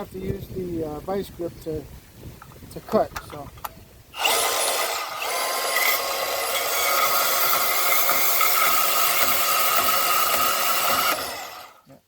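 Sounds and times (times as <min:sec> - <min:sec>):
band saw cutting: 0:04.2 - 0:11.8.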